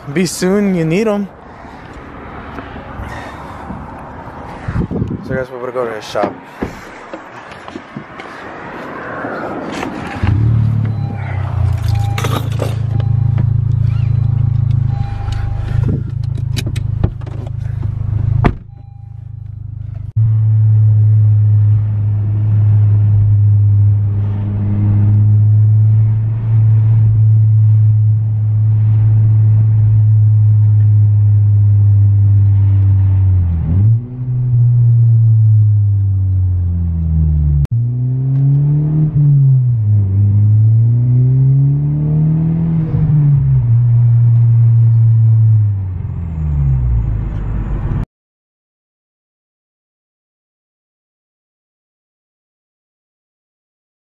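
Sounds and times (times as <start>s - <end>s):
car engine and exhaust droning: 0.0s - 48.0s.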